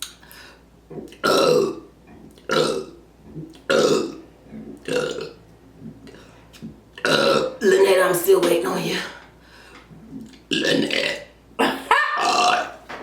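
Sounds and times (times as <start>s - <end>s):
person burping: 1.1s - 1.9s, 2.5s - 4.2s, 4.8s - 5.4s, 7.0s - 7.6s, 10.5s - 12.8s.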